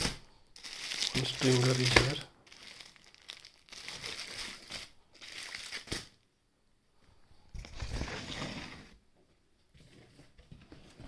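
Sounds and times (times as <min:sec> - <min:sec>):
plastic packaging crinkling: 0:00.0 - 0:06.2.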